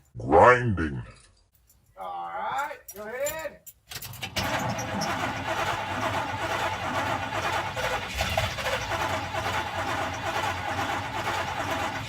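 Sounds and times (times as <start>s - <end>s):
engine cranking without starting: 3.9s - 12.0s.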